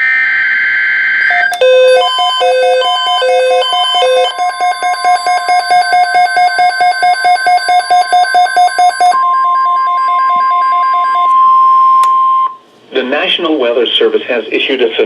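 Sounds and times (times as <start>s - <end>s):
rapid electronic beeping alarm: 0.0s - 12.6s
weather radio warning alarm tone: 1.3s - 13.2s.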